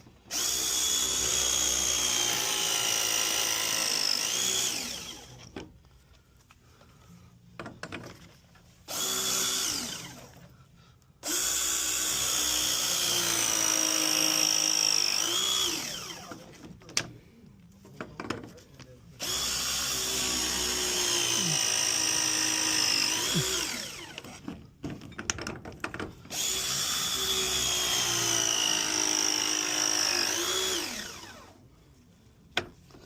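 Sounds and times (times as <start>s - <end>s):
power drill motor running: 0.2s - 5.4s, 8.8s - 10.4s, 11.2s - 16.4s, 19.2s - 24.4s, 26.3s - 31.6s.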